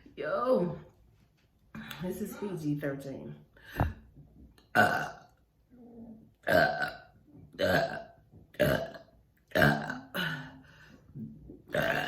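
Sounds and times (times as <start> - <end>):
woman burping: 4.7 - 5.4, 6.4 - 10.7, 11.7 - 12.0.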